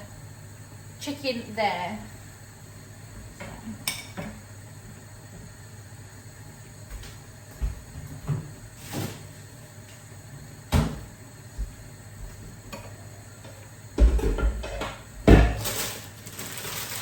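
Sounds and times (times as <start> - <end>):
kitchen knocks and bumps: 14.0 - 15.8.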